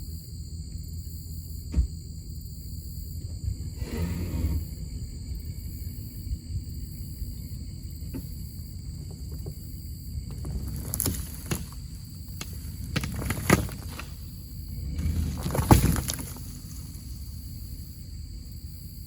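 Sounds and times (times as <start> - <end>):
vehicle engine running low: 0.0 - 19.0
roots cracking: 10.2 - 17.4.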